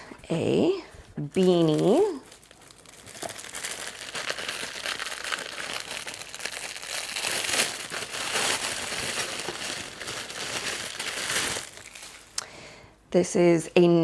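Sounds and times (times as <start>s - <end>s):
packaging rustling and crumpling: 1.3s - 12.4s.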